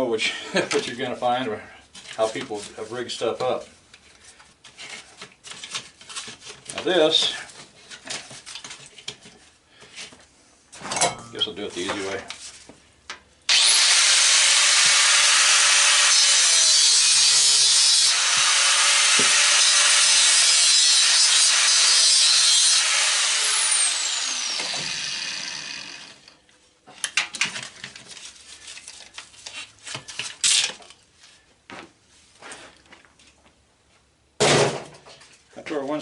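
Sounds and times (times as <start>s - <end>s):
power tool cutting metal sheet: 13.5s - 26.3s.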